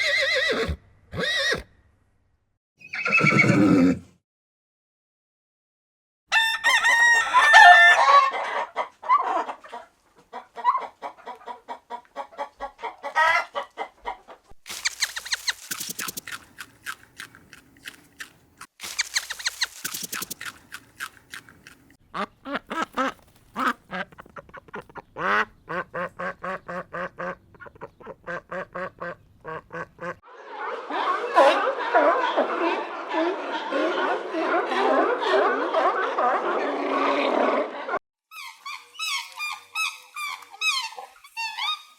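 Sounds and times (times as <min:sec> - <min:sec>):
chicken drawn-out call: 0:06.3 - 0:16.4, 0:18.8 - 0:21.5
chickens clucking: 0:07.8 - 0:36.5.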